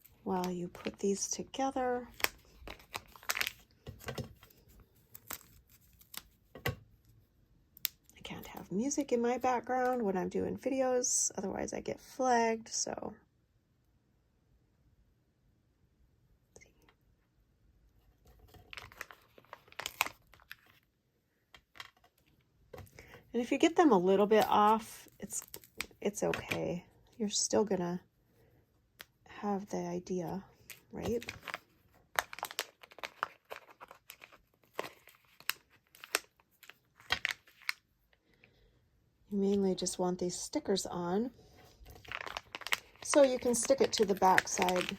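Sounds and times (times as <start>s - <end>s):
sticker sheets crinkling: 0.0s - 6.4s, 18.3s - 20.8s, 30.6s - 37.8s, 41.4s - 44.9s.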